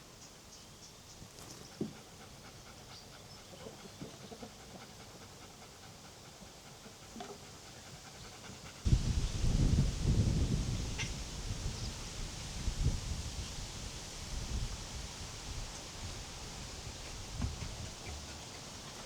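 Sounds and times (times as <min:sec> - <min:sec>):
dog panting loudly: 0:01.8 - 0:08.9.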